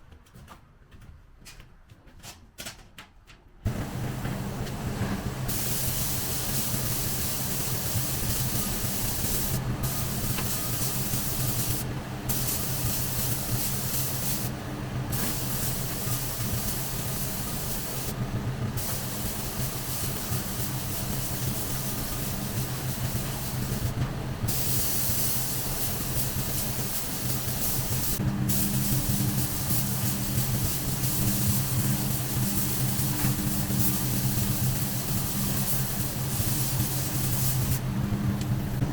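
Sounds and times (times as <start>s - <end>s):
steady low hum: 3.6s - 38.9s
paint spray gun hissing: 5.5s - 14.5s, 15.1s - 18.2s, 18.8s - 23.9s, 24.5s - 37.8s.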